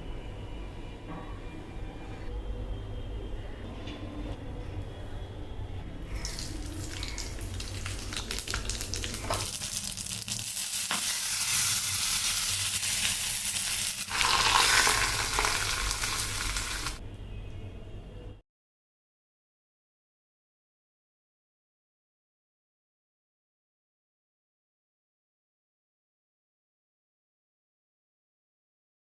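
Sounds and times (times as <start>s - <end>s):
batter sizzling on a griddle: 6.3s - 17.0s.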